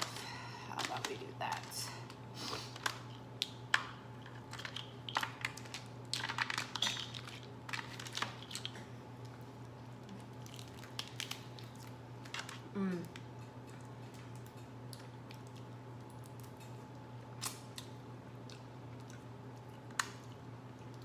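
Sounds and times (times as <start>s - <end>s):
shells crackling and clicking: 2.8s - 8.8s.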